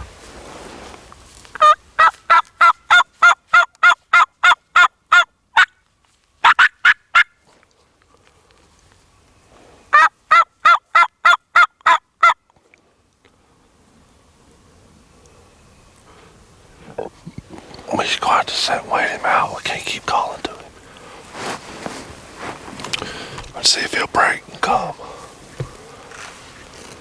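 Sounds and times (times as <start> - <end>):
turkey call yelping: 1.6 - 5.7, 6.4 - 7.4, 9.9 - 12.4.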